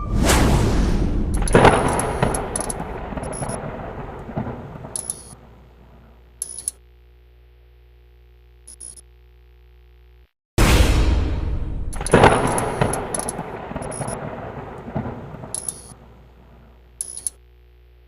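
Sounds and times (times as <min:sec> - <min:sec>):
heavy impact hit with rumble: 0:00.0 - 0:04.8, 0:10.6 - 0:15.2
bright metallic clinks: 0:01.4 - 0:03.6, 0:05.0 - 0:05.4, 0:06.4 - 0:06.8, 0:12.0 - 0:14.2, 0:15.5 - 0:16.0, 0:17.0 - 0:17.4.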